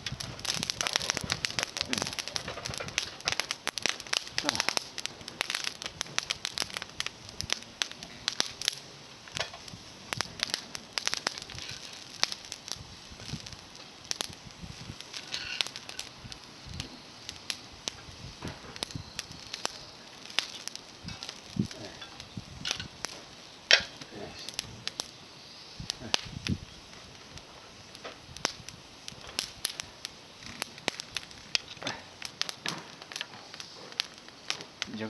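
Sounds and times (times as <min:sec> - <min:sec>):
wood fire crackling: 0:00.0 - 0:35.0.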